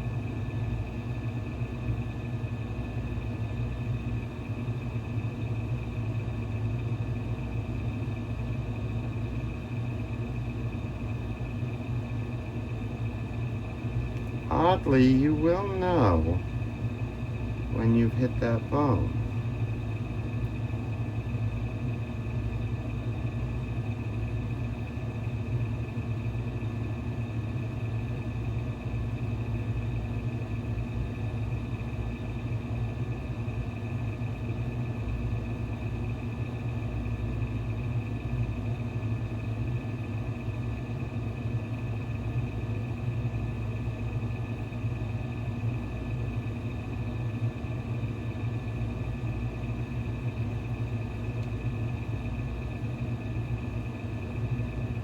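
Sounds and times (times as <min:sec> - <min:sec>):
machine hum: 0:00.0 - 0:30.1
faint high whining tones: 0:13.4 - 0:20.0.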